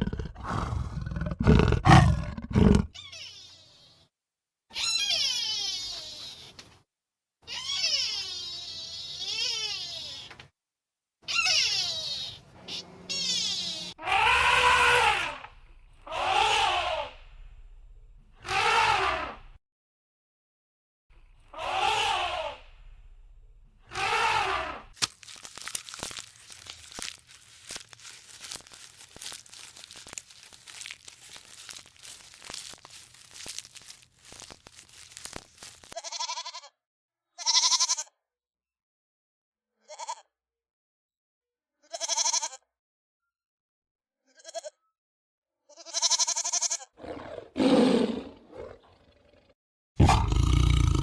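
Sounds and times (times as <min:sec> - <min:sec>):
goat bleating: 0:11.3 - 0:15.2, 0:28.0 - 0:36.6, 0:41.9 - 0:42.6, 0:45.8 - 0:46.8
small clicks and crunches: 0:25.0 - 0:36.0.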